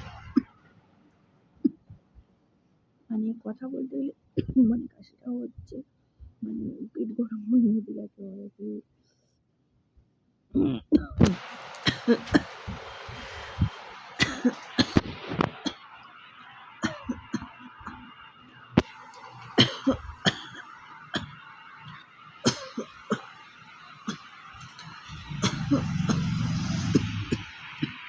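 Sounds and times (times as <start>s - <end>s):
person coughing: 11.0s - 12.6s, 14.2s - 15.0s, 19.6s - 20.6s, 22.5s - 23.3s, 25.1s - 28.0s.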